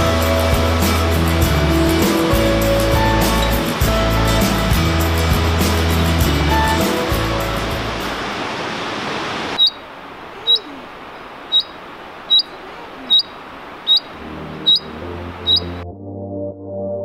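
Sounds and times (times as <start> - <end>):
music: 0.0 - 8.3, 14.2 - 17.0
falling water rushing: 0.0 - 15.8
bird short high chirp: 9.6 - 10.8, 11.5 - 15.8.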